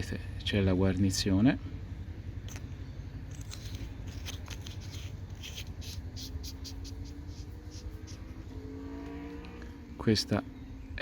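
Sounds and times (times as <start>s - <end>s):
flashlight clicks and scraping: 3.3s - 7.1s.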